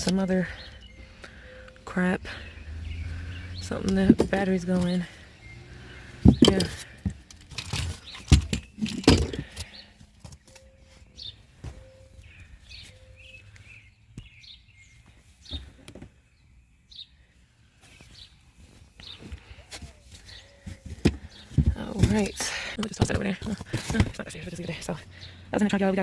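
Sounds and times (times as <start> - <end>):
birds chirping: 0.0 - 26.0
loose items knocking and clattering: 3.5 - 5.2, 6.2 - 10.5, 20.7 - 25.9.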